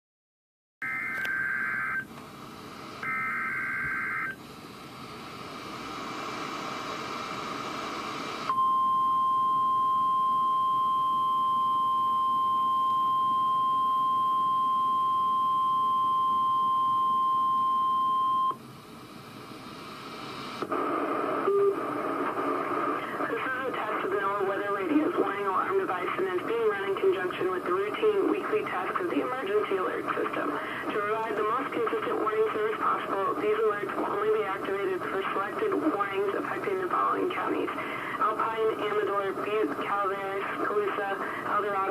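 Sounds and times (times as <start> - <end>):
steady warning alarm tone: 0.8 - 2.1, 3.0 - 4.4
radio hiss: 4.7 - 8.5, 18.9 - 41.9
announcer speaking: 23.3 - 41.9.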